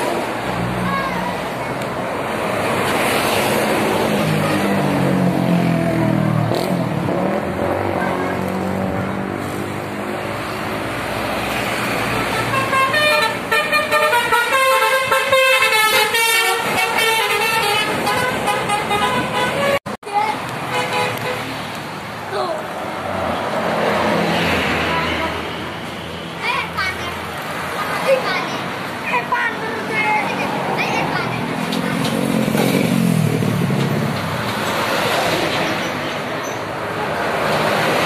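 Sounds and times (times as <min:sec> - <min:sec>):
heavy vehicle engine: 0:00.0 - 0:38.0
road traffic passing: 0:00.0 - 0:38.0
bus musical horn: 0:12.1 - 0:19.9.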